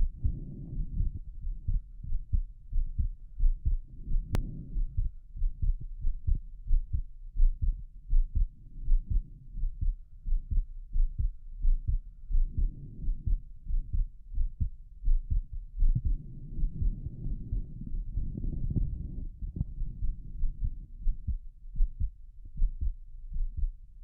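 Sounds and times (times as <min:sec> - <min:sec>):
fast heartbeat through stethoscope: 0:00.0 - 0:23.8.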